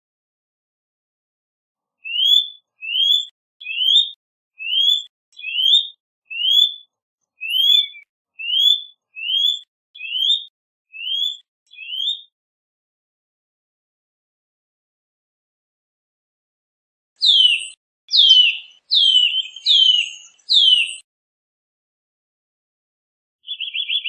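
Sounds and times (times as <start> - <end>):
bird whistling rising notes: 2.1 - 6.8, 7.4 - 12.3, 17.2 - 21.0, 23.4 - 24.0.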